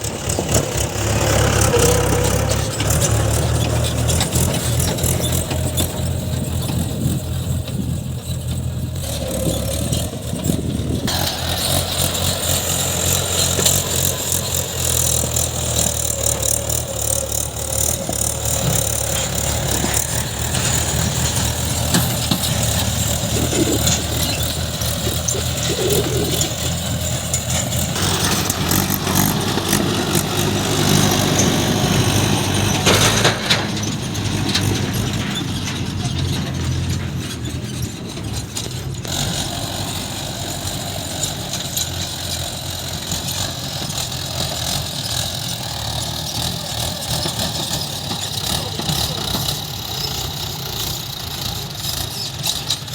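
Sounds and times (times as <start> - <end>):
heavy diesel engine running: 0.0 - 52.9
clattering: 11.0 - 30.2, 31.3 - 39.5.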